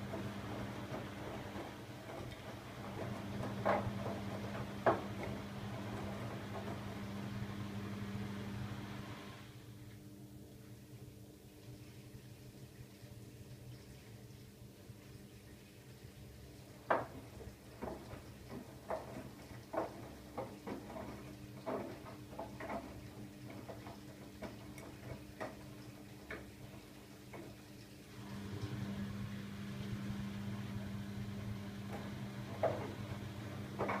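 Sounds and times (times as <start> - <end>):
washing machine drum knocks: 0.0 - 7.4, 31.9 - 34.0
washing machine hum: 0.0 - 34.0.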